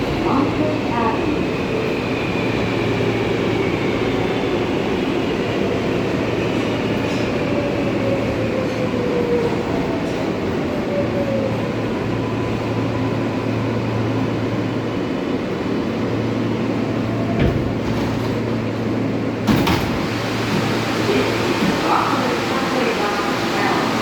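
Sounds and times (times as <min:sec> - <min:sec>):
subway car rumbling: 0:00.0 - 0:24.0.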